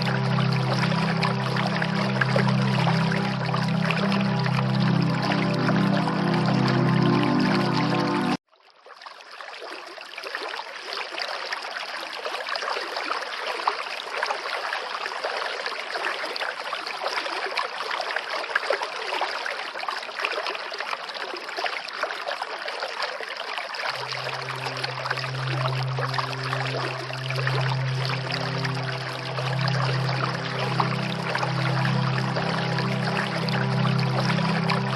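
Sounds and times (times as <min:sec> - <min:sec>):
low sustained music notes: 0:00.0 - 0:08.4, 0:23.9 - 0:34.9
waterfall rushing: 0:23.9 - 0:34.9.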